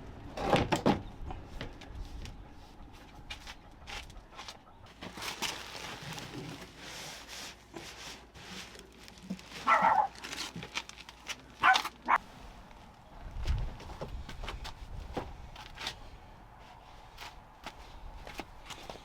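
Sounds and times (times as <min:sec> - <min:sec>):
dog barking: 0:09.6 - 0:10.1, 0:11.6 - 0:12.2.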